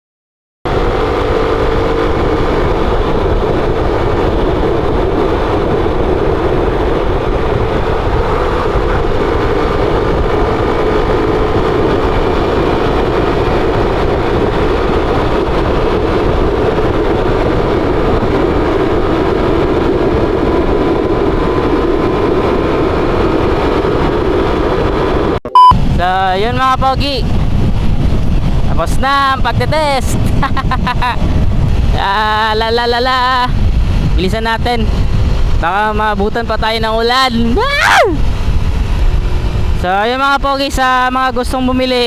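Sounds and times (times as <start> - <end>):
motorcycle engine riding: 0.7 - 42.0
wind rumble on microphone: 0.7 - 42.0.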